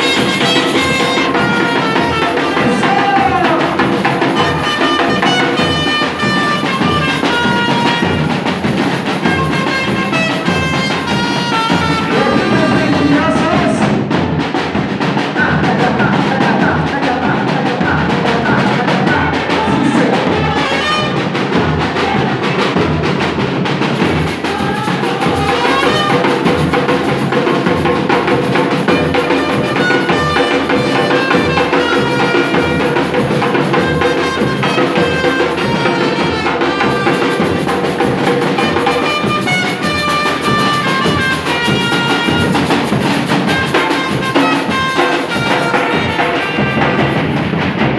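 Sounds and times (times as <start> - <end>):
samba percussion ensemble: 0.0 - 47.9.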